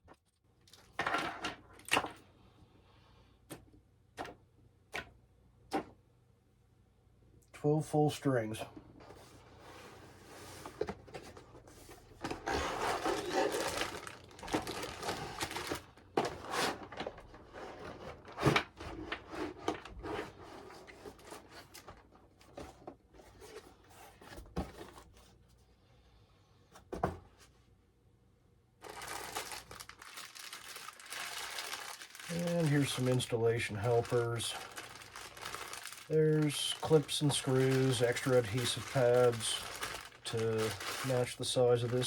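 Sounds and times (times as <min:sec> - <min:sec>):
plastic and cardboard rustling: 0:08.7 - 0:25.7, 0:28.8 - 0:42.0.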